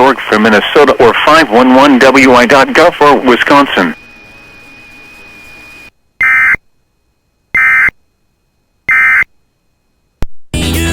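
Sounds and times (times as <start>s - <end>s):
thin high whine: 0.0s - 6.7s, 7.4s - 8.1s
faint radio hiss: 0.0s - 10.9s.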